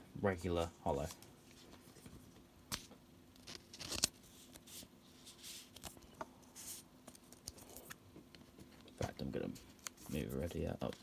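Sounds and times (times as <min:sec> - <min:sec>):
cards sliding and swishing: 0:02.7 - 0:06.9.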